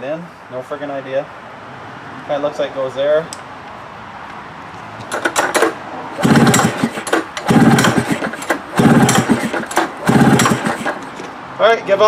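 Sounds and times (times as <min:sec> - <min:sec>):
snowmobile recoil rope pulls: 0:05.1 - 0:11.1.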